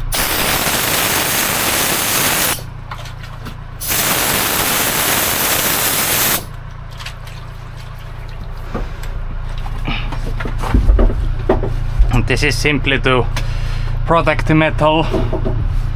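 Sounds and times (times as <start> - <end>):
spray hiss: 0.0 - 2.7, 3.8 - 6.5
steady low hum: 0.0 - 2.7, 3.8 - 6.6.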